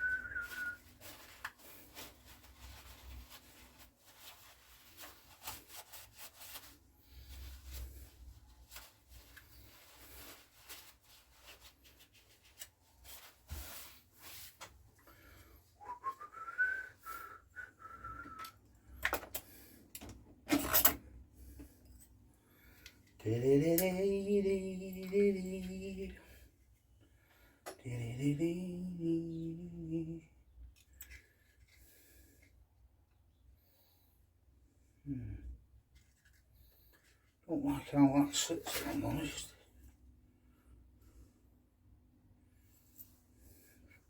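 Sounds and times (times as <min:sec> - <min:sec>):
man whistling: 0:00.0 - 0:00.9, 0:15.8 - 0:18.6
clicks and taps of tools: 0:18.4 - 0:21.0
man humming: 0:35.1 - 0:35.5.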